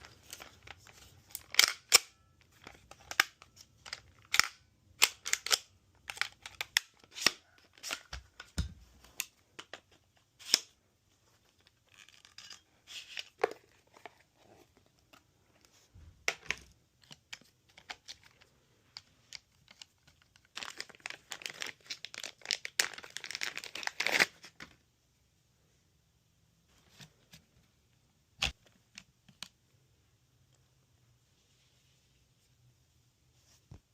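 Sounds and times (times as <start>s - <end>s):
plastic parts clicking and knocking: 0.0s - 10.8s, 16.1s - 20.9s.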